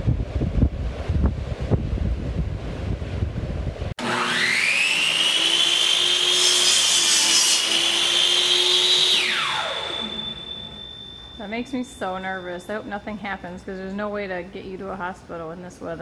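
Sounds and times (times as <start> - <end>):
wind gusting on microphone: 0.0 - 4.0
high machine whine: 7.6 - 13.9.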